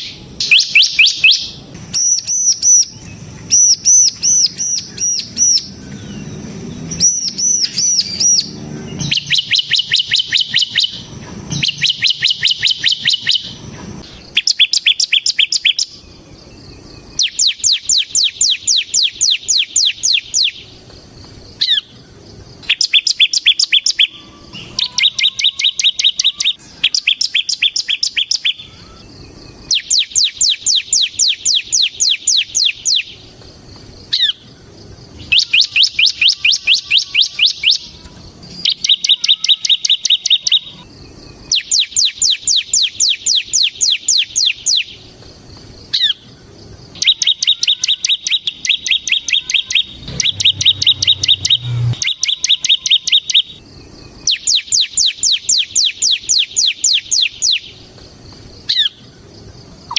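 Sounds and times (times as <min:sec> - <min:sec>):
bird rattling trill: 0:09.0 - 0:16.0, 0:47.0 - 0:53.6.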